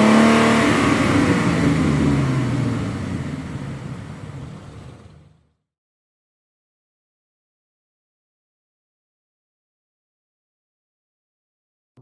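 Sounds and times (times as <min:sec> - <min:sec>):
car engine revving: 0:00.0 - 0:05.5.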